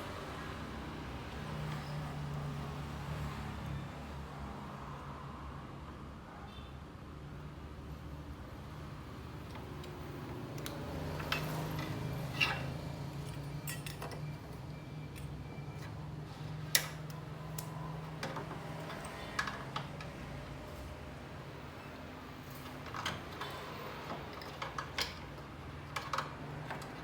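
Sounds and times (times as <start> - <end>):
clicks and metallic taps: 16.7 - 20.1.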